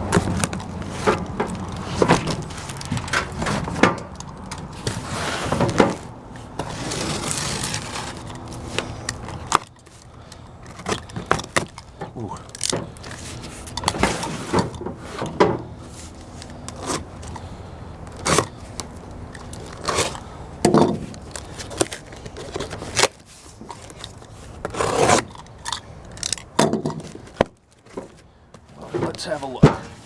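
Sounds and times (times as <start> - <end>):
cardboard box being opened: 0.0 - 3.9, 4.7 - 9.7, 18.2 - 20.2.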